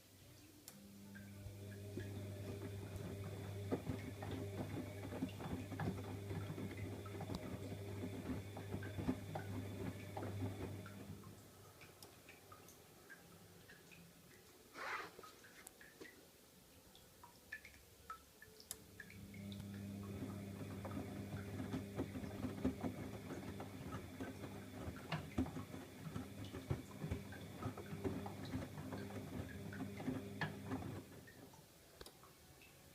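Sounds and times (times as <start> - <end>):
water dripping and splashing: 0.6 - 32.9
washing machine motor hum: 0.7 - 12.1, 18.9 - 31.6.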